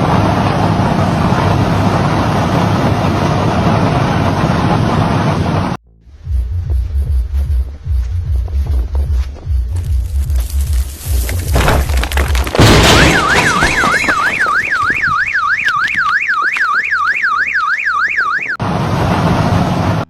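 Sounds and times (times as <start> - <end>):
car alarm wailing: 12.7 - 18.6.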